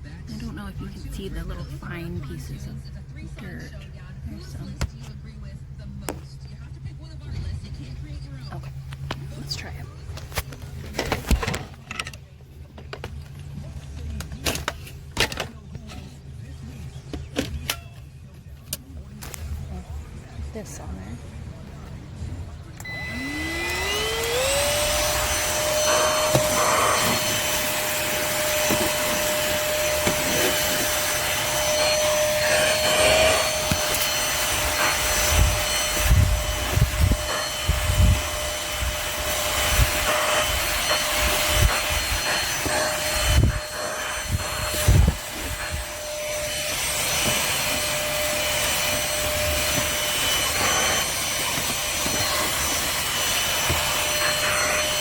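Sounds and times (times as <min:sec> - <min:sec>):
vacuum cleaner motor whine: 0:21.7 - 0:55.0.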